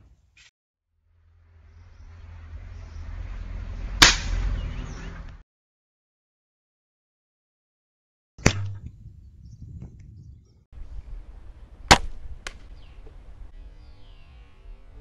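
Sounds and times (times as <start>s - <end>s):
weaker crack: 4.0s - 4.6s, 8.4s - 9.1s, 11.9s - 13.2s
slingshot rifle snap: 11.9s - 12.7s.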